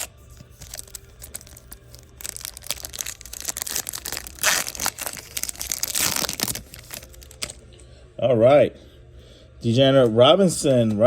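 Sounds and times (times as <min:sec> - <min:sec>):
cards rustling: 0:00.0 - 0:07.6
foil pack tearing and crinkling: 0:00.0 - 0:07.6.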